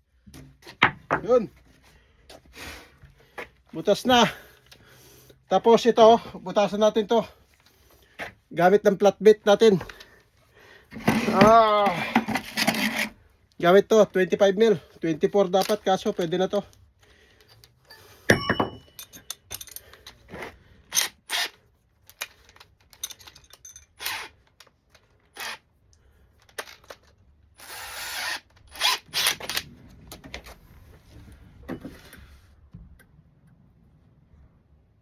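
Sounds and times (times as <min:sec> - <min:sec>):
power drill drilling into wood: 0:25.4 - 0:25.6, 0:27.6 - 0:29.4.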